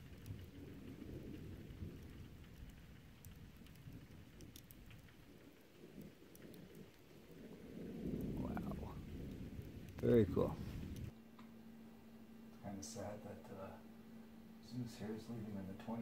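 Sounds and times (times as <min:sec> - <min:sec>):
drip ticks: 0:00.0 - 0:08.4
faint rain falling: 0:00.0 - 0:16.0
steady low rumble: 0:00.0 - 0:16.0.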